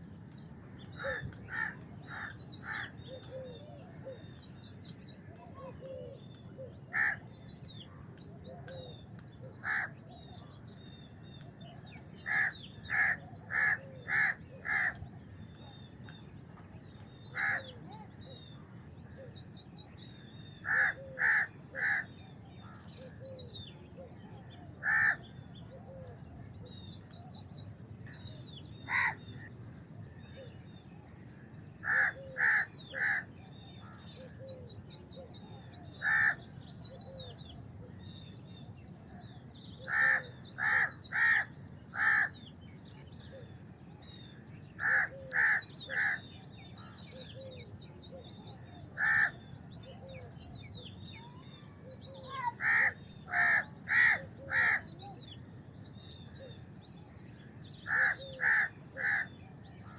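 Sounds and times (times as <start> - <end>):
small birds chirping: 0.0 - 59.9
crows cawing: 0.9 - 3.0, 6.9 - 7.3, 9.6 - 10.0, 12.2 - 15.0, 17.3 - 17.7, 20.6 - 22.1, 24.8 - 25.4, 28.9 - 29.2, 31.8 - 33.3, 36.0 - 36.5, 39.8 - 42.4, 44.8 - 46.3, 49.0 - 49.5, 52.3 - 55.0, 57.9 - 59.4.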